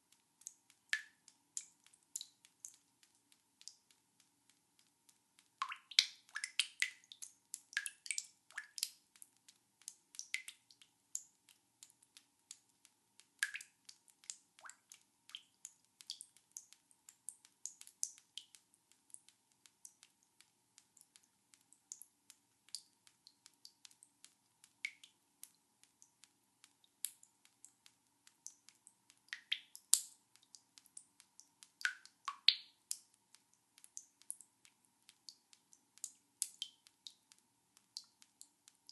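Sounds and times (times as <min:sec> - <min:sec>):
water dripping fast: 0:00.0 - 0:38.9.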